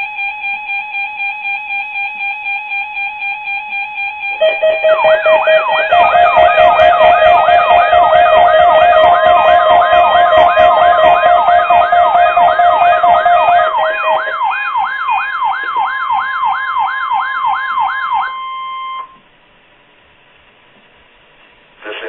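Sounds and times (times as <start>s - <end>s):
electronic siren wailing: 4.0s - 19.2s
steady high tone: 4.4s - 19.2s.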